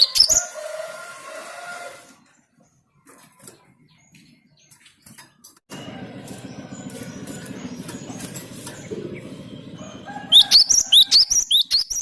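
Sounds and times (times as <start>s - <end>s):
bird sharp chirping: 0.0s - 0.5s, 6.2s - 12.0s
low rumbling noise: 5.7s - 11.2s.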